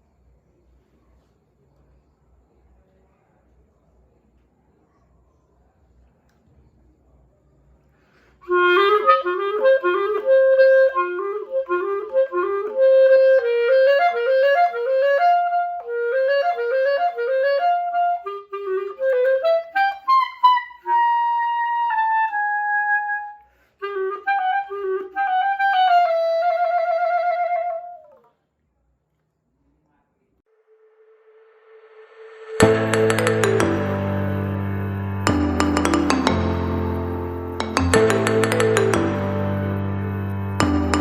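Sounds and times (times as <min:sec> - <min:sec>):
solo clarinet melody: 0:08.4 - 0:28.3, 0:32.6 - 0:41.0.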